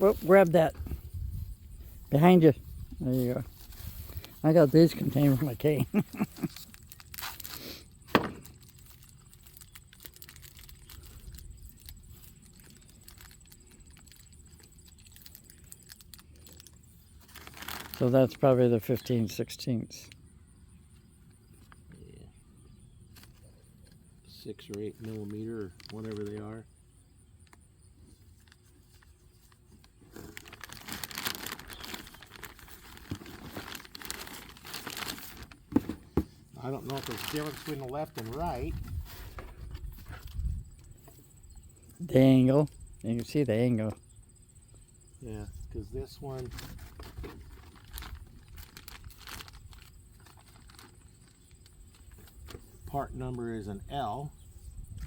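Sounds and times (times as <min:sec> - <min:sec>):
packaging crumpling and rustling: 0:03.1 - 0:18.3, 0:25.0 - 0:26.4, 0:28.4 - 0:36.0, 0:36.6 - 0:40.4, 0:46.3 - 0:52.6.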